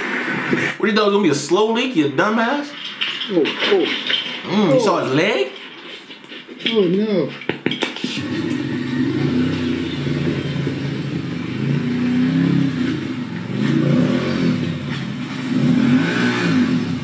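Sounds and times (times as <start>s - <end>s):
small engine revving: 8.2s - 17.0s.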